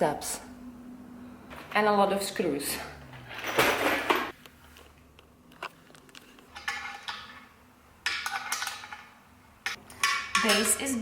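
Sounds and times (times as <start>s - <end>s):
metal parts clinking: 3.1s - 4.3s.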